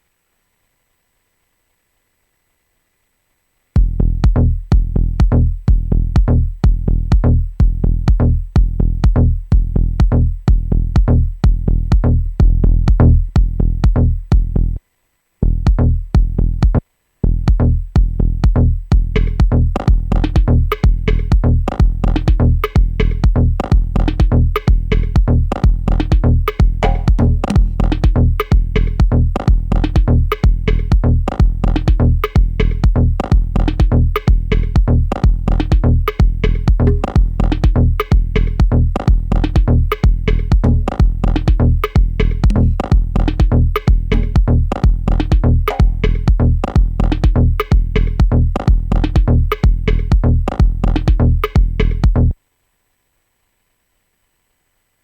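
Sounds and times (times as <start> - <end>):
dub techno beat: 3.8 - 14.8, 15.4 - 52.4
kick drum: 3.8 - 14.8, 15.4 - 52.4
hi-hats and chord stabs: 18.5 - 52.3.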